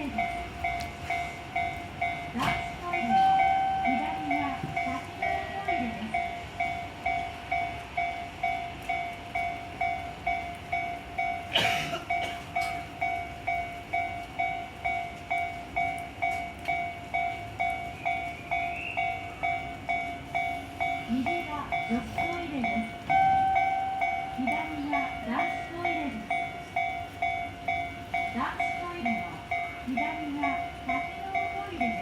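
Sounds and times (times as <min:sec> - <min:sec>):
level-crossing electronic ding: 0:21.8 - 0:26.5.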